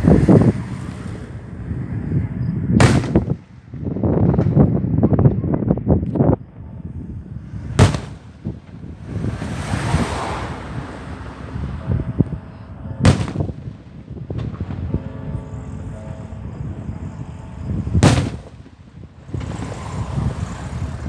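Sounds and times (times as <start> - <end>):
firework bangs: 2.7 - 4.7, 7.4 - 12.0, 13.0 - 15.4, 17.6 - 21.0
firework hiss: 2.8 - 3.5, 7.4 - 11.8, 13.1 - 14.9, 17.7 - 21.0
small firework pops: 2.8 - 3.5, 7.8 - 9.9, 13.1 - 14.9, 18.0 - 20.0
fireworks crackling: 2.8 - 4.6, 7.4 - 11.8, 13.1 - 15.1, 17.6 - 21.0.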